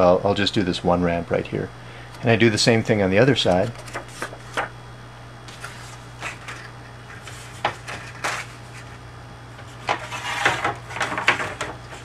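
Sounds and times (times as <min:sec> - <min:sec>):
steady low hum: 0:00.0 - 0:12.0
paper rustling: 0:03.4 - 0:04.7, 0:05.5 - 0:09.0.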